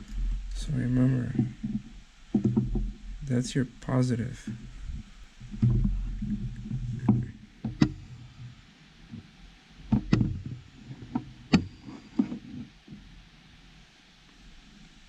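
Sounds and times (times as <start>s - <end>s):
low handling rumble: 0.0s - 9.4s.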